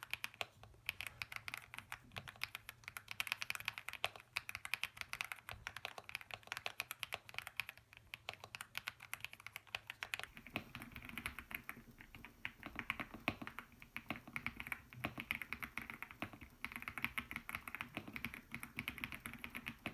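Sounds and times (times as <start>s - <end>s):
mechanical keyboard typing: 0.0s - 19.9s.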